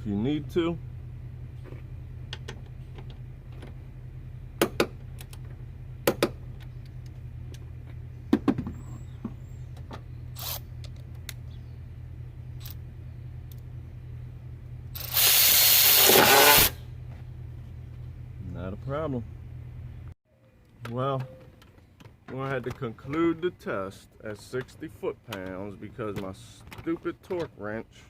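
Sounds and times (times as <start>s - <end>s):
steady low hum: 0.0s - 20.2s
power ratchet spinning: 10.4s - 10.6s, 15.0s - 16.8s.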